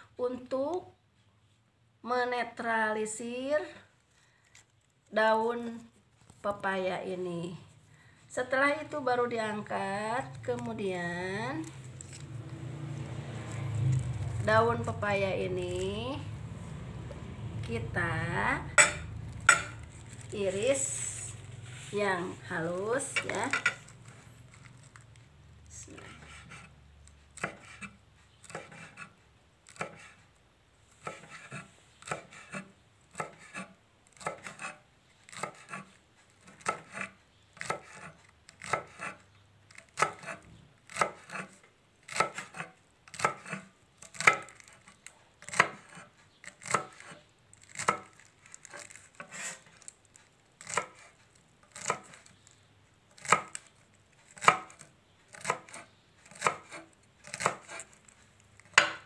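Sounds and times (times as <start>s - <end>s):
knife chopping on cutting board: 18.6s - 20.6s, 27.4s - 30.2s, 31.0s - 49.9s, 50.6s - 51.1s, 51.7s - 52.3s, 53.2s - 53.7s, 54.3s - 58.0s, 58.6s - 59.0s.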